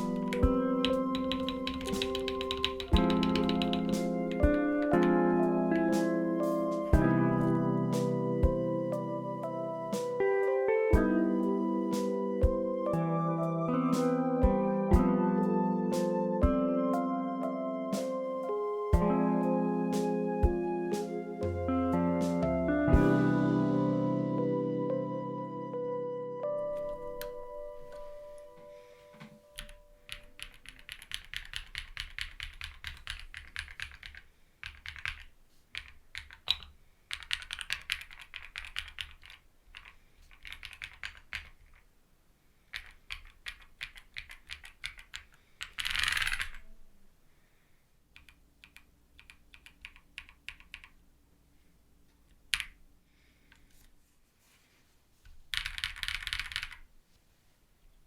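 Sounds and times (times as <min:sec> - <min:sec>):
mechanical keyboard clicks: 0:00.0 - 0:05.2, 0:29.6 - 0:41.8, 0:42.7 - 0:46.6, 0:48.2 - 0:51.0, 0:52.5 - 0:52.8, 0:55.5 - 0:56.8.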